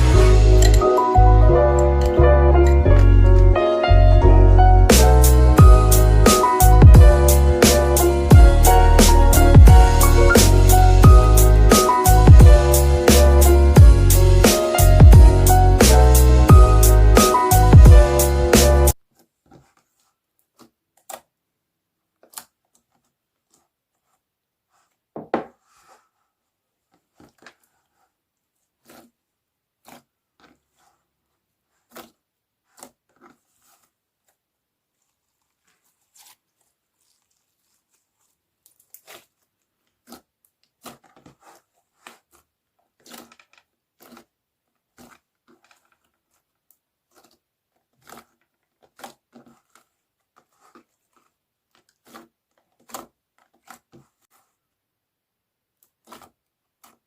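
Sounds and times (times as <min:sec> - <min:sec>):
slime crackling and popping: 0:35.0 - 0:42.4, 0:43.0 - 0:44.3.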